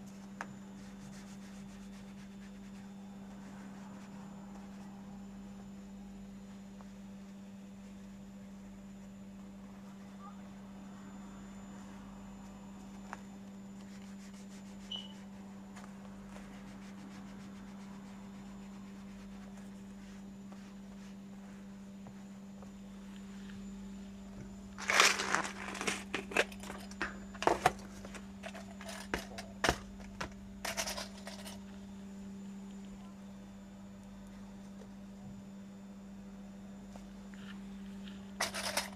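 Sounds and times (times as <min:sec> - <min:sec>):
steady low hum: 0:00.0 - 0:38.9
sheet crinkling and rustling: 0:24.4 - 0:31.6.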